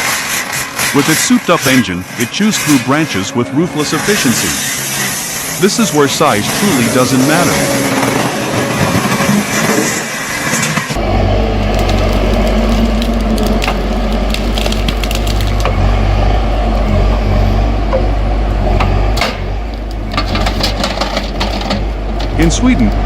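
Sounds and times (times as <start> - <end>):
wood chipper engine running: 0.0 - 23.0
branches cracking and crunching: 11.0 - 16.8.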